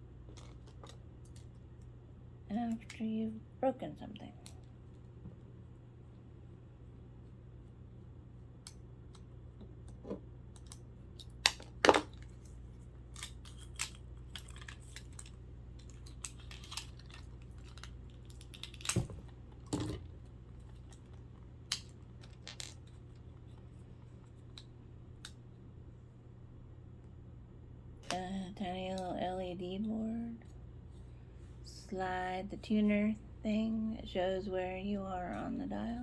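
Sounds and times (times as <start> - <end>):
plastic parts clattering: 13.1 - 20.1.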